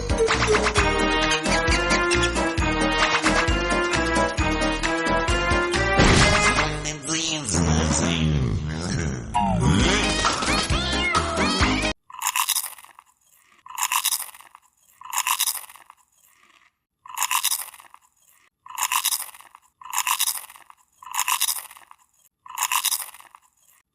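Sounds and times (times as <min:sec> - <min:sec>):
crunching: 0:12.0 - 0:23.9.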